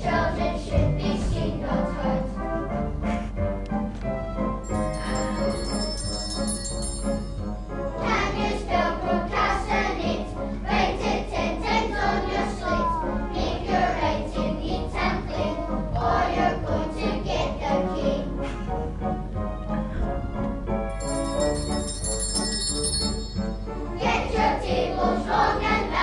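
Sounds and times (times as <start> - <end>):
bell-like notes: 4.7 - 8.1, 20.9 - 23.9
choir singing: 8.0 - 18.3, 23.9 - 26.0.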